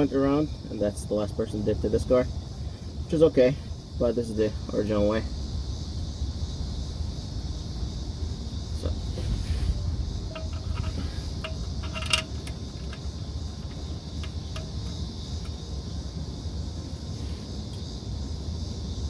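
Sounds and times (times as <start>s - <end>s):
low rumble and hiss: 0.0s - 19.0s
wrench clinking on drain plug: 10.3s - 15.6s.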